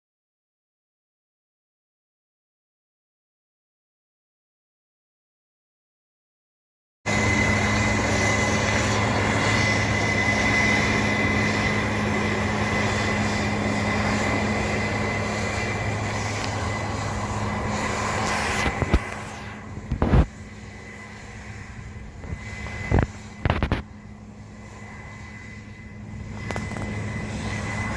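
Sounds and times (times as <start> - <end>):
combine harvester running: 7.1 - 27.9
high whine: 7.1 - 27.9.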